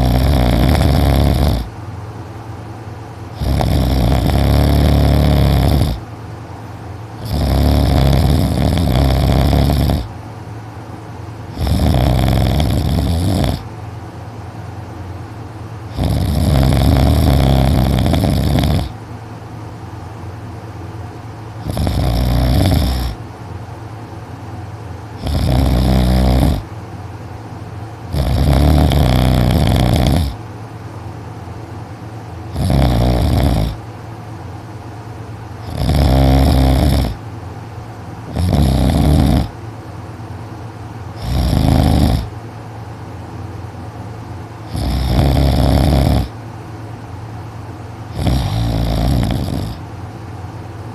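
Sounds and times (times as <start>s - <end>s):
loud heavy snoring: 0.0s - 1.7s, 3.3s - 6.0s, 7.2s - 10.1s, 11.5s - 13.7s, 15.9s - 19.0s, 21.6s - 23.2s, 25.2s - 26.7s, 28.1s - 30.4s, 32.5s - 33.8s, 35.6s - 37.2s, 38.3s - 39.6s, 41.2s - 42.4s, 44.6s - 46.4s, 48.1s - 49.8s.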